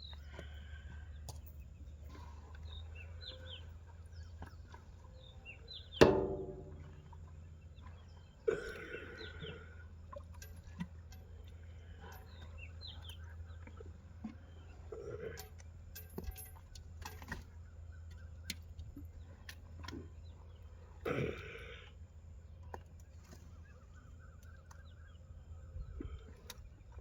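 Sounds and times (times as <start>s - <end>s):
birds chirping: 0.0s - 27.0s
low hum: 5.9s - 8.9s
metallic clang: 6.0s - 7.1s.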